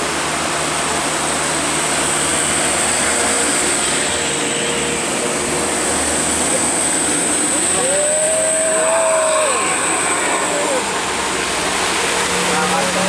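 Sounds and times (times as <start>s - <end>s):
heavy vehicle engine passing: 0.0s - 13.0s
rain and wet tyres hissing: 7.6s - 13.0s.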